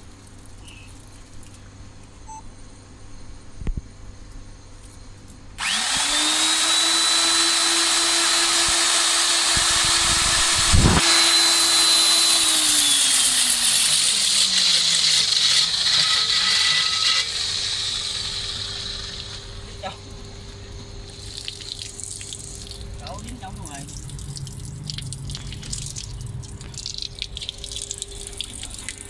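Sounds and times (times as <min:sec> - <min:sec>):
electric core drill motor whining: 0:05.6 - 0:19.6.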